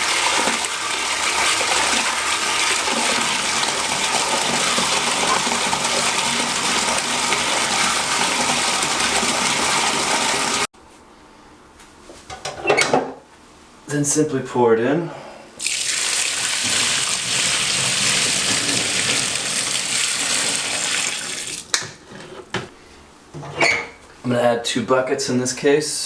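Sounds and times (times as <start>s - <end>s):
water gushing into a bucket: 0.0s - 10.7s, 15.6s - 21.7s.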